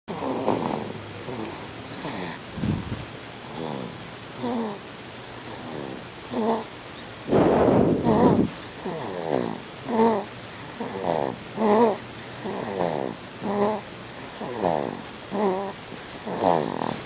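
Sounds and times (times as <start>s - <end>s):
person snoring: 16.3s - 17.0s.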